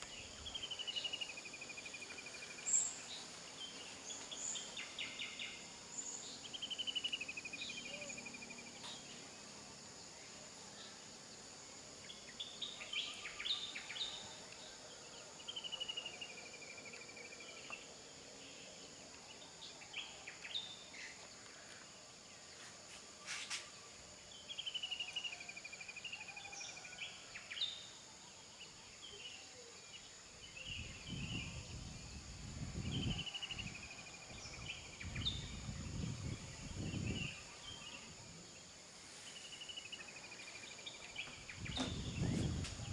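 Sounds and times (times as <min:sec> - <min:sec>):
high-pitched insect drone: 0:04.4 - 0:11.2
birds calling: 0:40.8 - 0:42.9.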